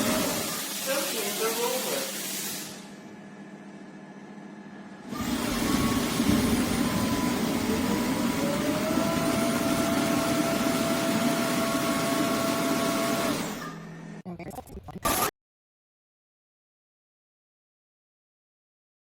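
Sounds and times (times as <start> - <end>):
vacuum motor and roller noise: 0.0 - 14.2.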